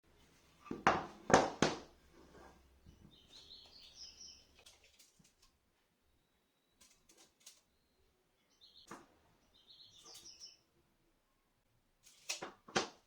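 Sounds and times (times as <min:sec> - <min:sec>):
bird chirping: 0:02.9 - 0:04.7, 0:07.7 - 0:10.6.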